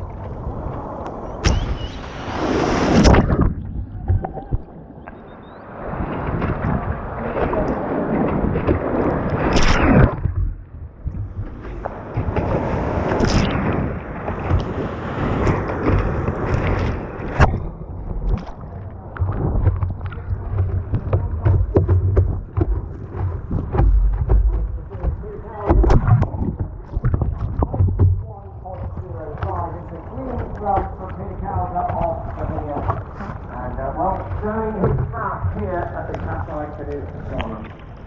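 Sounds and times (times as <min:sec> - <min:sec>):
wind buffeting microphone: 0:00.0 - 0:38.0
whitewater rushing and splashing: 0:01.4 - 0:04.9
sharp splashes and knocks: 0:01.4 - 0:05.3, 0:05.9 - 0:37.9.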